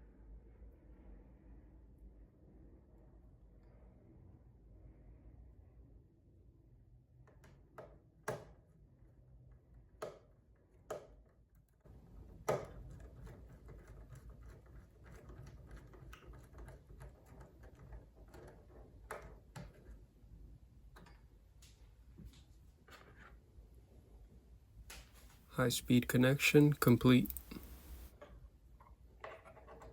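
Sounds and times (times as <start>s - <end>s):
tools clicking and tapping on wire: 26.6s - 28.1s.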